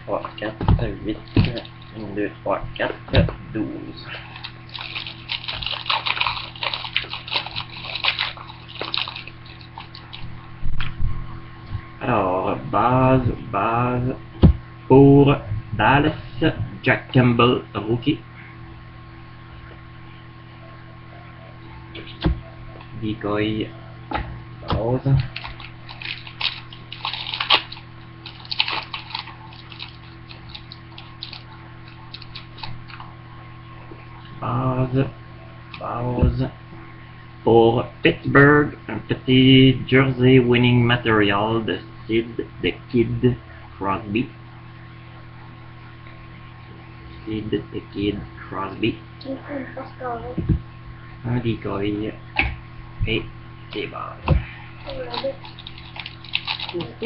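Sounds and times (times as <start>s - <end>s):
electrical mains hum: 0.0s - 57.0s
foil wrapper crinkling and tearing: 4.3s - 10.3s, 25.2s - 33.0s, 54.8s - 57.0s
trading cards rustling and clicking: 25.2s - 33.0s, 54.8s - 57.0s.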